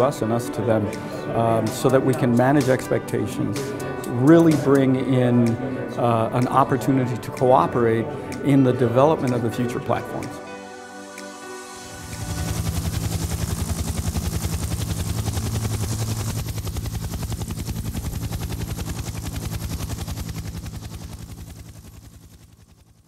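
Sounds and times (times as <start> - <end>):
helicopter rotor blades chopping: 11.8 - 23.0
low engine hum: 11.9 - 23.0.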